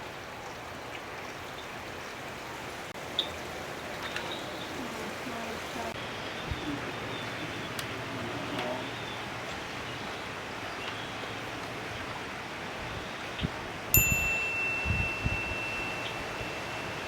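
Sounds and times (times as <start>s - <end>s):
background hiss: 13.5s - 17.0s
metallic chime ringing: 14.0s - 17.0s.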